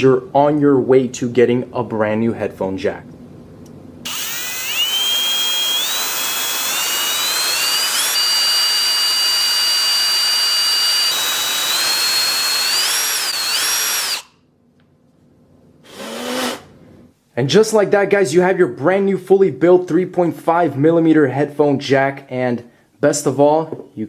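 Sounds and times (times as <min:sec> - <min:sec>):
electric drill whining: 0:04.1 - 0:14.3, 0:15.9 - 0:16.7.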